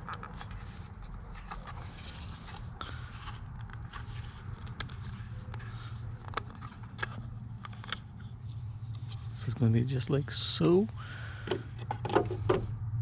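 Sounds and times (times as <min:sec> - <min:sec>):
plastic parts clicking and scraping: 0:00.0 - 0:09.5, 0:11.4 - 0:12.7
steady low hum: 0:00.0 - 0:13.0.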